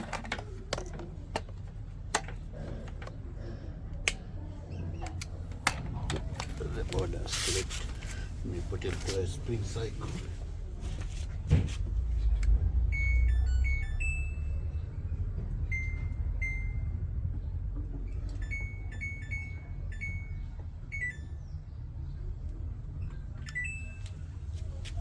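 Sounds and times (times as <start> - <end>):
electronic beeps: 12.9 - 14.7.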